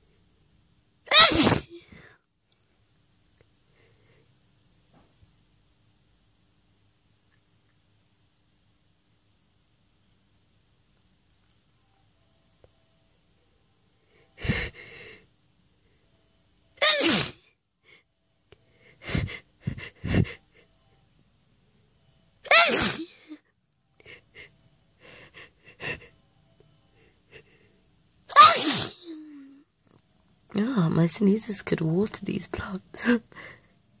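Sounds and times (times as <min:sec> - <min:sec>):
person sneezing loudly: 0:01.1 - 0:01.9, 0:16.8 - 0:17.4, 0:22.5 - 0:23.3, 0:28.3 - 0:29.3.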